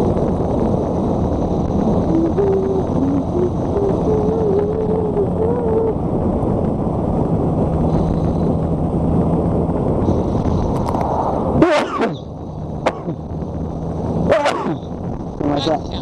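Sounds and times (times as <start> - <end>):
motorcycle engine drone: 0.0 - 16.0
wind rush over microphone: 0.0 - 16.0.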